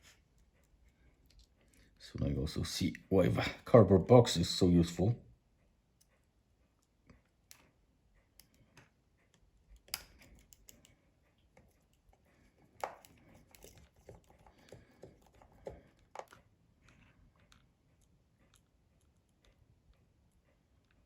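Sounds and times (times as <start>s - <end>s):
small tools clicking and tapping: 6.8s - 16.5s.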